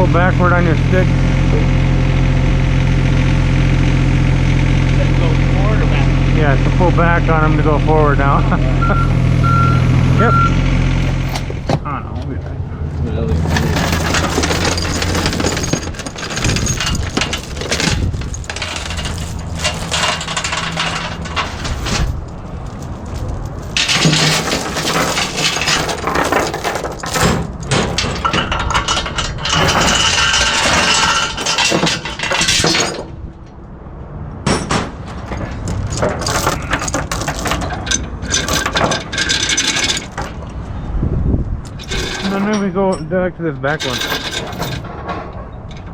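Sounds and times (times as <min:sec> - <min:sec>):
metallic clanking and rattling: 0:10.2 - 0:12.0, 0:13.2 - 0:33.6, 0:34.4 - 0:40.9, 0:41.6 - 0:45.9.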